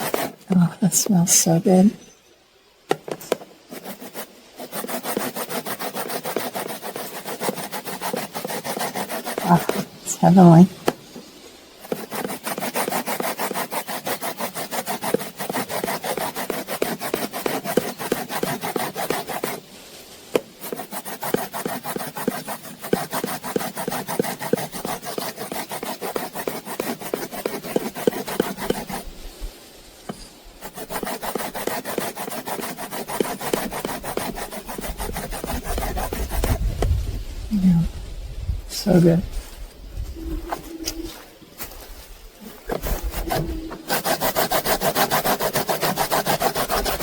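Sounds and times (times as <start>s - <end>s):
grater rasping on lemon rind: 0.0s - 1.0s, 3.7s - 10.6s, 11.8s - 19.7s, 20.3s - 29.1s, 30.6s - 36.6s, 42.4s - 47.0s.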